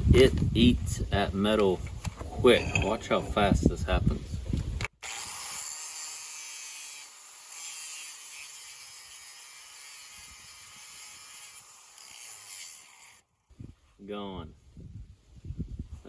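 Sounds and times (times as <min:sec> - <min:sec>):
grinder cutting metal: 0:05.0 - 0:13.2.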